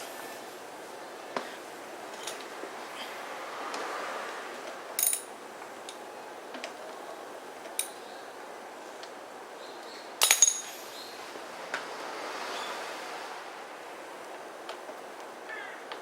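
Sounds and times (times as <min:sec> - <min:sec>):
small metal parts clinking: 0:05.0 - 0:05.3, 0:10.2 - 0:10.9.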